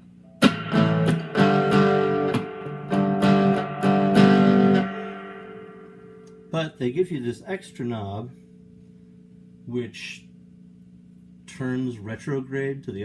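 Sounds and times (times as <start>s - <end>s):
electric guitar strummed chords: 0.3s - 8.8s.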